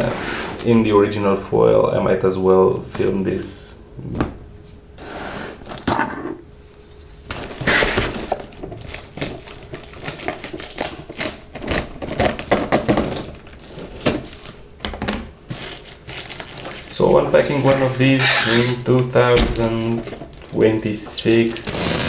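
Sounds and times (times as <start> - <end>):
plastic wrap tearing and crinkling: 7.3 - 14.6, 15.5 - 19.1, 21.4 - 22.0.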